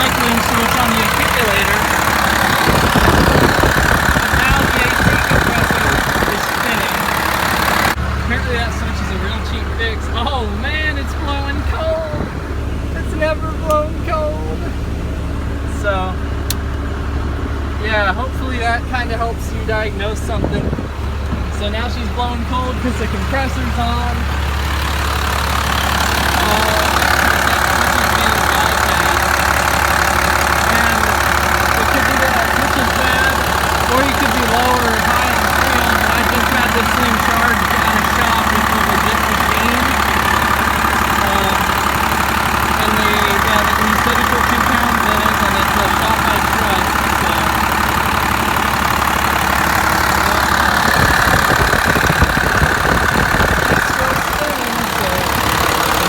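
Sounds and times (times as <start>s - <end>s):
diesel engine idling with clatter: 0.0s - 56.0s
high steady whine: 50.2s - 56.0s.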